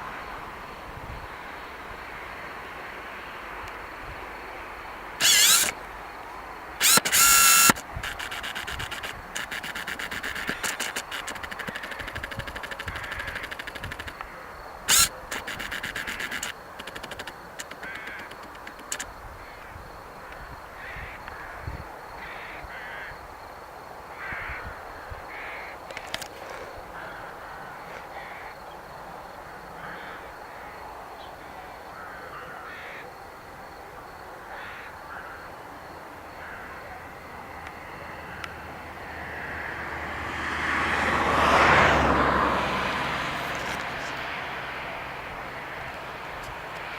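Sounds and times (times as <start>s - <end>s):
rapid clicking: 5.2s - 5.8s, 6.8s - 14.3s, 14.9s - 19.1s
crows cawing: 22.2s - 23.2s, 24.2s - 25.8s, 29.8s - 30.7s, 31.9s - 33.1s, 34.5s - 35.5s, 36.4s - 36.9s.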